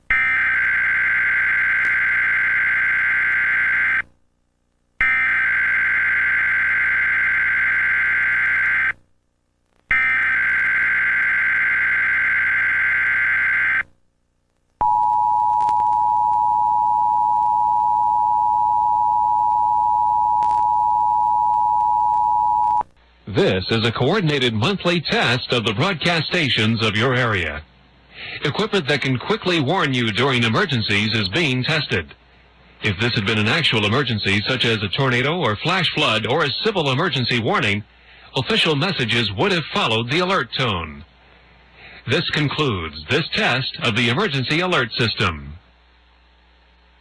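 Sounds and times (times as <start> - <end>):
two-tone attention signal: 14.8 - 22.8.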